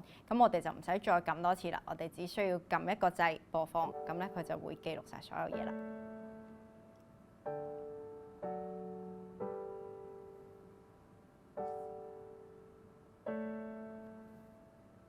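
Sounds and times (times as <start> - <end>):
keyboard chords ringing: 5.5 - 15.0.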